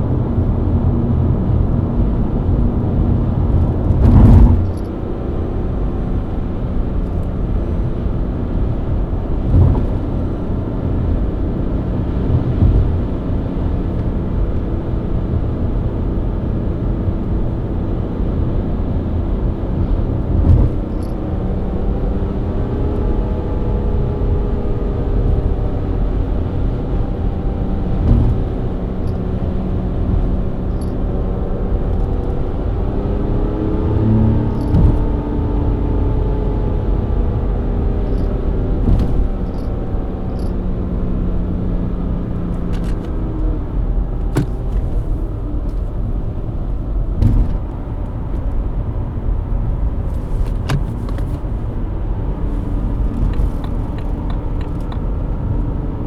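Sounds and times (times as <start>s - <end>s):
car engine cruising: 0.0s - 56.0s
road rumble: 0.0s - 56.0s
short thumps: 9.4s - 10.2s, 12.3s - 13.0s, 34.6s - 35.2s, 44.2s - 45.9s, 47.1s - 47.8s, 50.1s - 55.0s.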